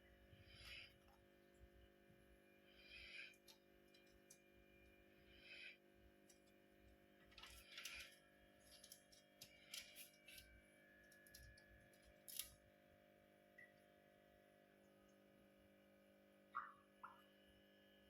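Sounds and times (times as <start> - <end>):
faint clicks and scratches: 2.8 - 12.6.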